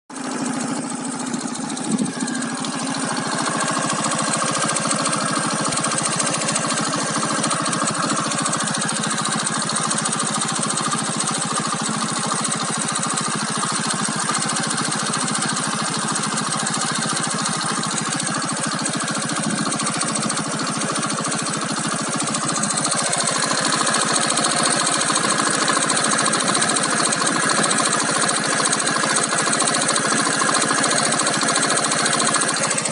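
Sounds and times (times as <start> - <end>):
scooter engine idling with rattle: 0.1 - 32.9.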